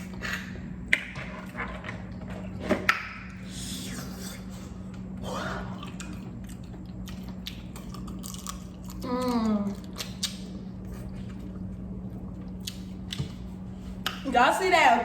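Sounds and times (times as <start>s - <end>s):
steady electrical hum: 0.0s - 15.0s
chewing eggs: 4.8s - 14.2s.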